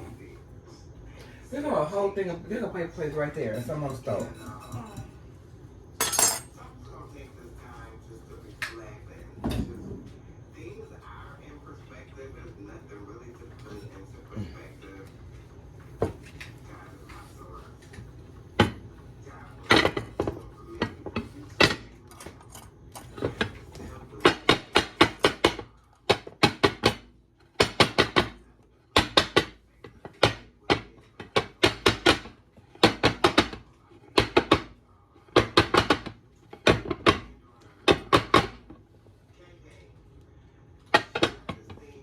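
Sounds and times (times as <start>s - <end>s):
utensils clinking against dishes: 2.8s - 5.3s, 6.0s - 6.7s, 13.5s - 15.1s.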